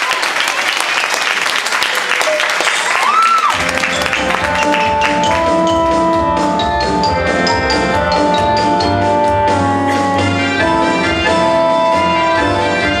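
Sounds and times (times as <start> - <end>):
audience applause: 0.0 - 5.8
percussion strikes: 3.6 - 12.2
wind ensemble playing chords: 3.6 - 13.0.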